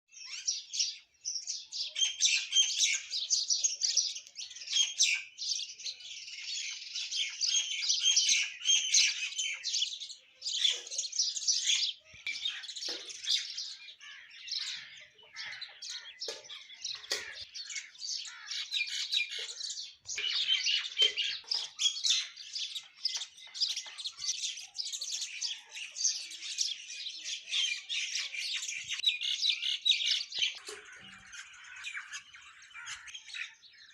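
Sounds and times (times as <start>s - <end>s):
birds chirping and chattering: 0.1s - 33.9s
bird squawks: 27.6s - 33.9s.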